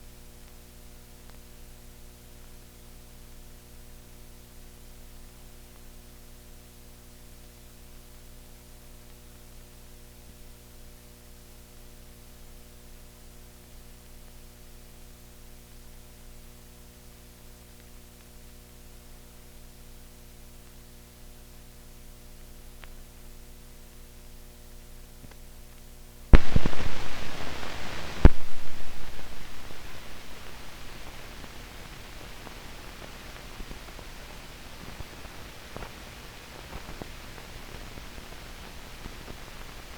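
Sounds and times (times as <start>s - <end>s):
film soundtrack hum and hiss: 0.0s - 39.9s
loud bangs: 26.4s - 31.5s.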